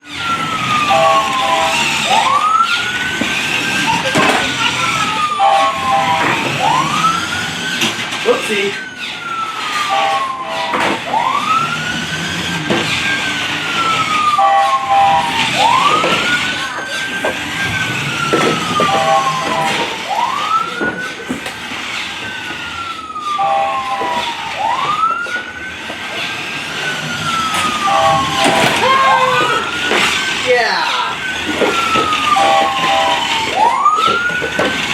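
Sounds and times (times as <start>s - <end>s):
toy fire truck siren wail: 0.0s - 34.9s
toy horn honk: 5.4s - 6.4s, 9.9s - 10.9s, 14.4s - 15.4s, 23.4s - 24.2s, 27.9s - 29.6s, 32.3s - 33.4s.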